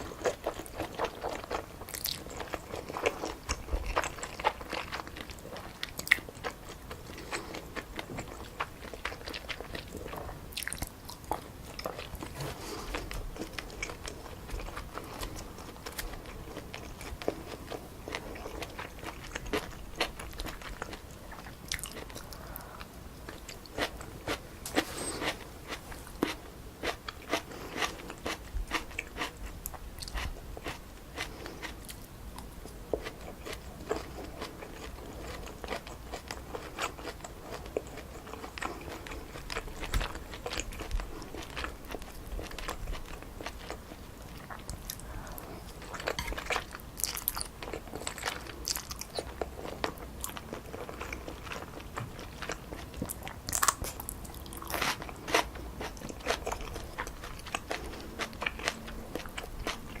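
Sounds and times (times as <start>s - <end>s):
wet chewing clicks and smacks: 0.0s - 22.3s.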